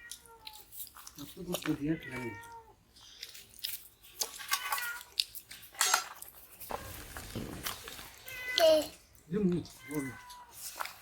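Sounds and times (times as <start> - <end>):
plates and utensils clinking: 5.7 - 7.8.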